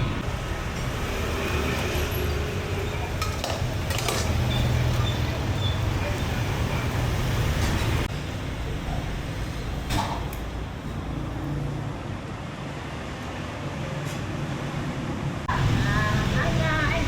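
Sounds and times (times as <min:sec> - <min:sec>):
traffic noise: 0:00.0 - 0:17.0
dishes and utensils clinking: 0:02.9 - 0:05.4.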